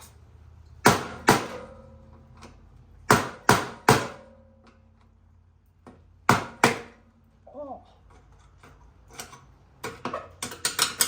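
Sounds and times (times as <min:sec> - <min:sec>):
hammer striking metal: 0:03.1 - 0:04.6.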